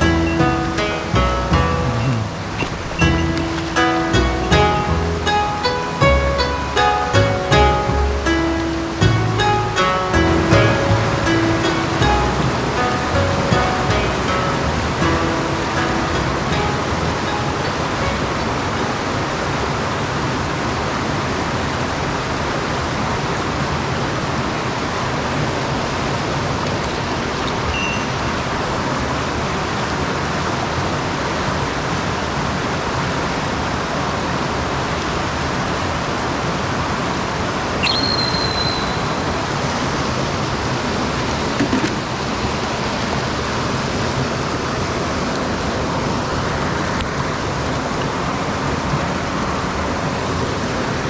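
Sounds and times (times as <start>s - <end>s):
stream rushing over rocks: 0.0s - 51.0s
short high-pitched chirp: 37.8s - 39.4s.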